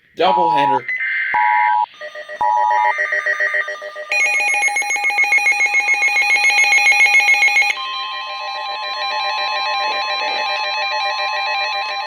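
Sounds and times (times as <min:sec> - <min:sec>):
weather radio alert alarms: 0:00.2 - 0:01.8.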